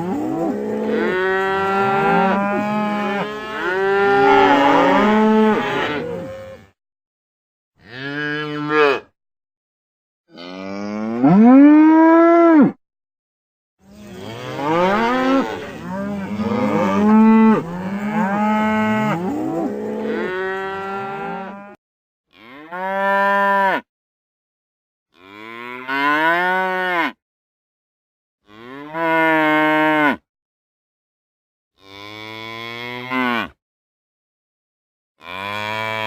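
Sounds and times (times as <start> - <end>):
cows mooing: 0.0 - 6.8, 7.8 - 9.1, 10.3 - 12.8, 13.9 - 23.8, 28.5 - 30.2, 31.8 - 33.6, 35.2 - 36.0.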